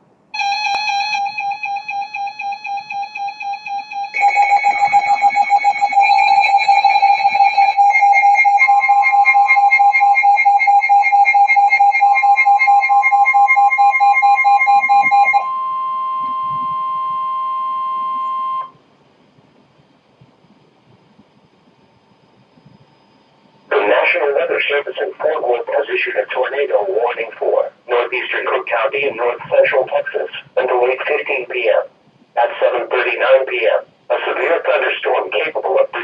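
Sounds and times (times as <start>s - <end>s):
steady weather alert tone: 0.0s - 36.0s
rapid electronic alarm beeping: 0.4s - 18.8s.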